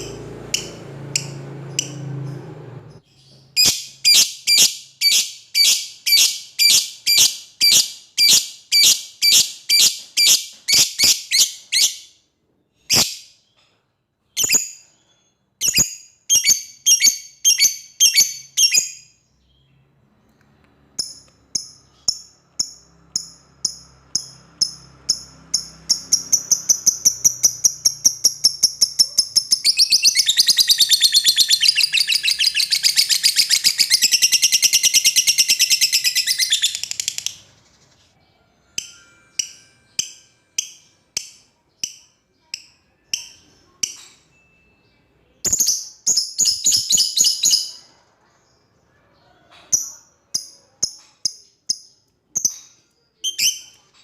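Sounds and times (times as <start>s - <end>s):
lovebird chirping: 0.0s - 54.0s
lovebird chattering trill: 21.0s - 37.6s.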